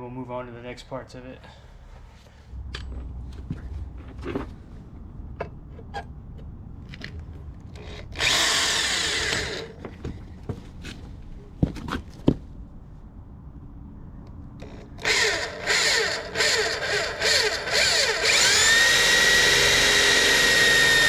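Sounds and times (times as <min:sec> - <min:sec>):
power tool grinding steel: 0:15.0 - 0:21.0.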